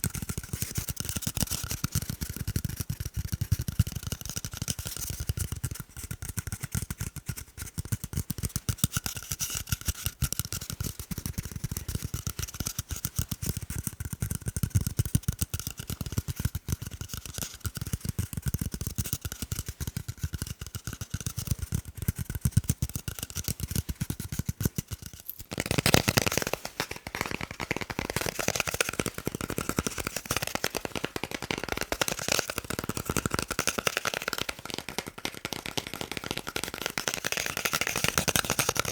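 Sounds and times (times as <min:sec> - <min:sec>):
rapid tapping on hard objects: 0:00.0 - 0:38.9.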